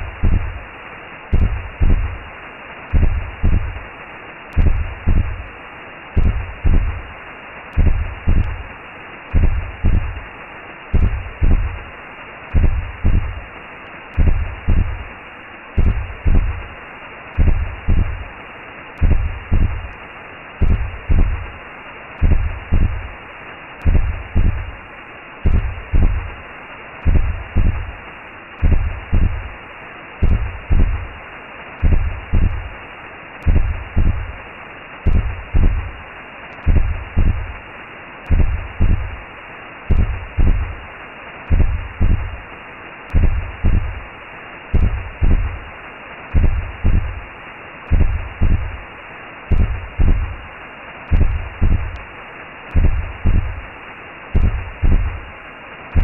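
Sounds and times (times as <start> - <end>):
slow heartbeat thumps: 0.0 - 0.6, 1.3 - 2.3, 2.9 - 3.9, 4.5 - 5.5, 6.2 - 7.1, 7.7 - 8.7, 9.3 - 10.3, 10.9 - 11.9, 12.5 - 13.5, 14.1 - 15.1, 15.8 - 16.8, 17.4 - 18.3, 19.0 - 20.0, 20.6 - 21.6, 22.2 - 23.2, 23.8 - 24.8, 25.4 - 26.4, 27.0 - 28.0, 28.6 - 29.6, 30.2 - 31.2, 31.8 - 32.8, 33.4 - 34.4, 35.1 - 36.0, 36.6 - 37.6, 38.3 - 39.2, 39.9 - 40.8, 41.5 - 42.4, 43.1 - 44.1, 44.7 - 45.7, 46.3 - 47.3, 47.9 - 48.9, 49.5 - 50.5, 51.1 - 52.1, 52.7 - 53.7, 54.3 - 55.3
steady whooshing hiss: 0.0 - 56.0.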